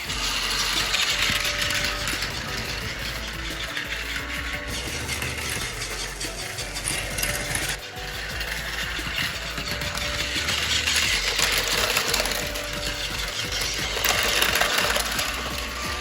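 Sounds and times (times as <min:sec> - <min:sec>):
small motor whir: 0:00.0 - 0:16.0
toy train wheels clicking: 0:00.0 - 0:16.0.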